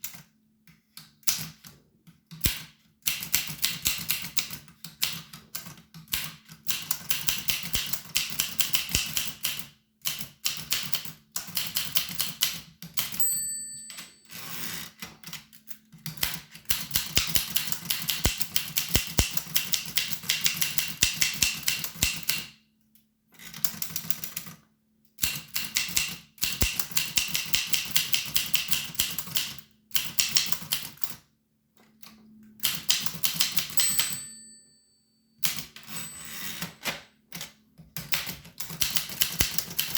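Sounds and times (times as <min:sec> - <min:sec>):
typewriter key strikes: 0:02.4 - 0:14.2, 0:16.1 - 0:22.6, 0:25.2 - 0:30.9, 0:35.4 - 0:39.9
typewriter bell ringing: 0:13.1 - 0:14.9, 0:33.6 - 0:36.8.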